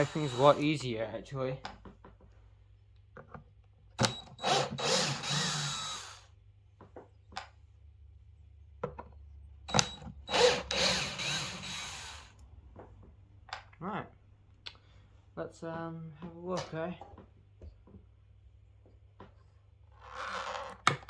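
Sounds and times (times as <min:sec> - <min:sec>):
cordless drill driving screws: 0:00.0 - 0:00.9, 0:04.0 - 0:06.3, 0:09.7 - 0:12.4.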